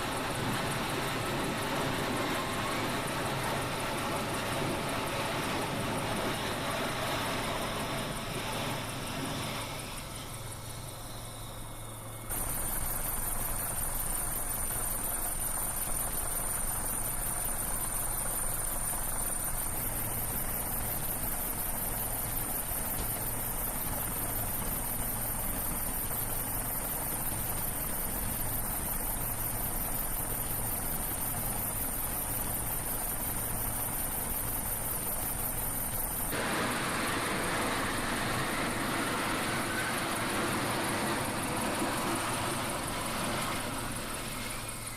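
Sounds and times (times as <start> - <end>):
jet engine whine and rush: 36.3 - 44.9.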